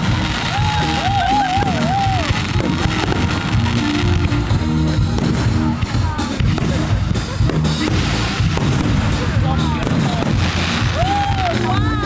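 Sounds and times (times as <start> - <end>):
music with deep bass line: 0.0 - 12.0.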